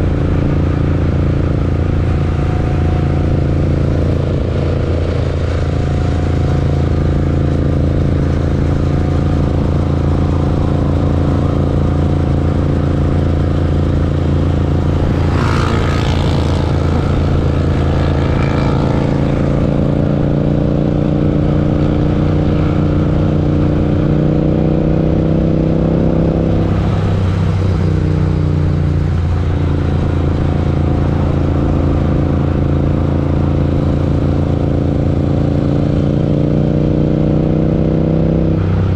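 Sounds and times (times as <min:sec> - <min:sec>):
rush of noise: 0:00.0 - 0:21.9
motorcycle engine running: 0:00.0 - 0:38.9.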